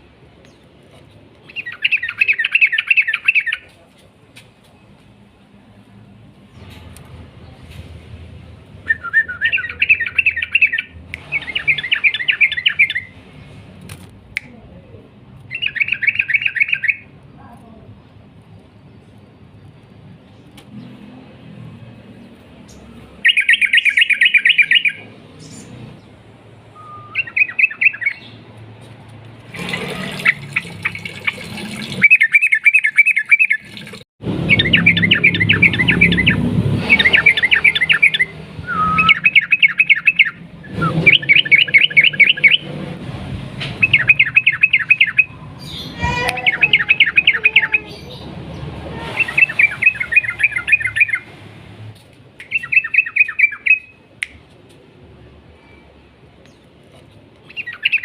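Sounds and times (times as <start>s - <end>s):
bulbul singing rapid phrases: 1.5s - 3.7s, 8.8s - 13.6s, 15.5s - 17.1s, 22.5s - 28.4s, 29.5s - 33.8s, 34.4s - 42.8s, 43.8s - 51.4s, 52.4s - 54.4s, 57.5s - 58.0s.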